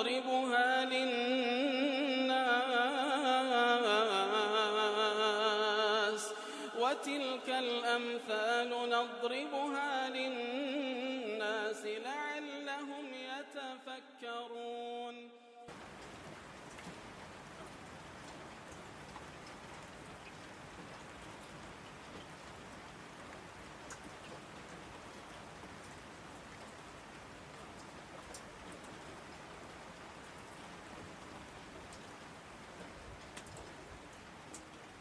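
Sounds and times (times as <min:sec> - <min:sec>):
faint steady rain: 0:00.0 - 0:12.8, 0:15.7 - 0:35.0
raindrop ticks: 0:15.7 - 0:35.0.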